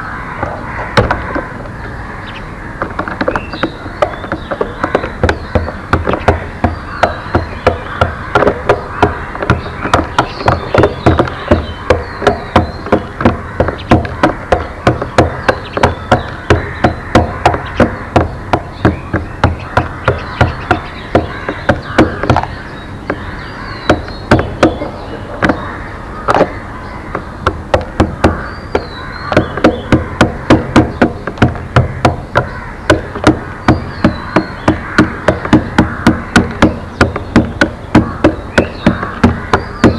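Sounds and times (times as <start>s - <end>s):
faint bird chirps: 0.0s - 27.5s
loud knocking blows: 2.8s - 39.9s.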